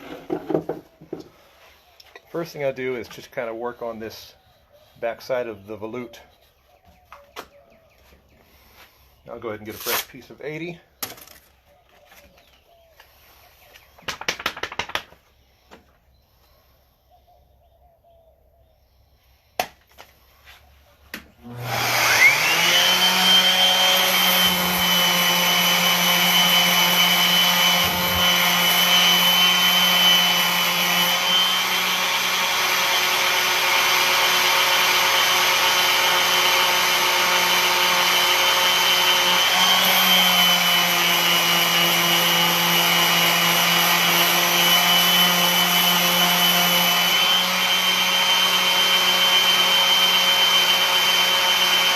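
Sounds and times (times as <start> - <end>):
sharp clicks: 14.0 - 15.2
electric sander sanding wood: 21.2 - 51.9.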